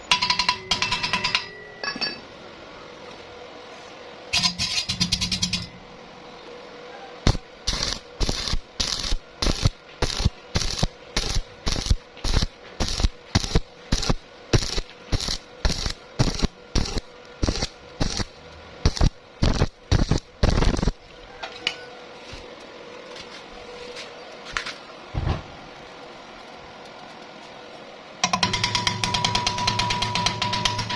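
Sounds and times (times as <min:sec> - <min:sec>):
welding arc bursts: 0:07.2 - 0:21.0.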